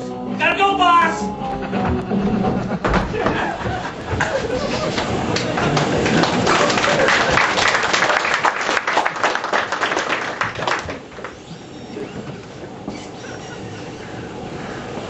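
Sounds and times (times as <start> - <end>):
audience applauding: 1.8 - 11.5.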